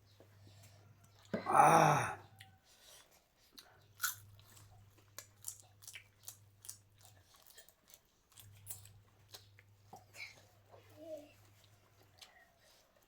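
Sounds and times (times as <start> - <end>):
person eating crunchily: 3.5 - 9.5.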